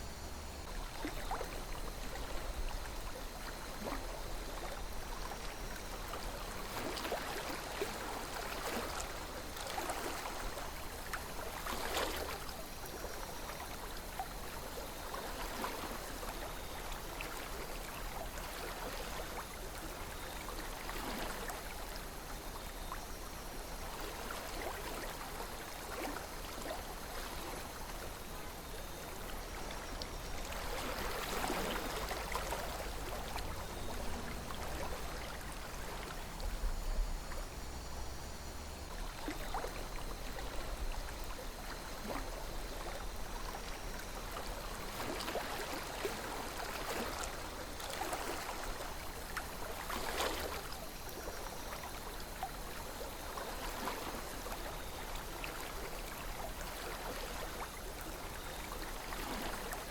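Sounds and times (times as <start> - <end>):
water gurgles and splashes: 0.0 - 59.9
river flowing: 23.8 - 59.9.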